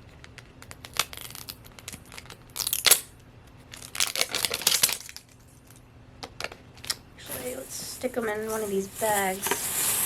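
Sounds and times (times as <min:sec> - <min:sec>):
plastic wrapping crinkling and tearing: 0:03.7 - 0:05.4, 0:07.2 - 0:10.0.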